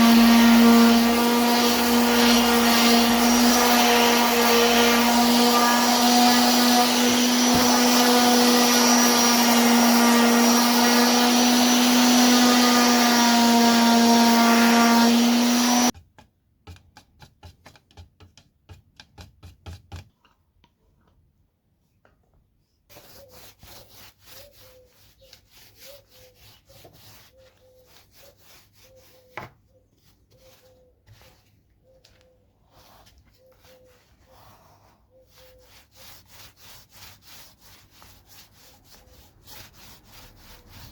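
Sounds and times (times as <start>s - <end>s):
power tool running on wood: 0.0s - 15.9s.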